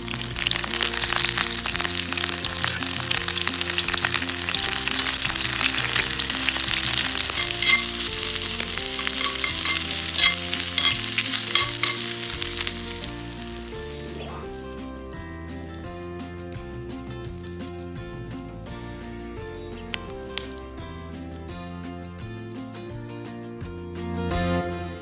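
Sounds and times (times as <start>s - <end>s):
chicken wings sizzling: 0.0s - 15.8s, 19.9s - 21.3s
background music: 0.0s - 25.0s.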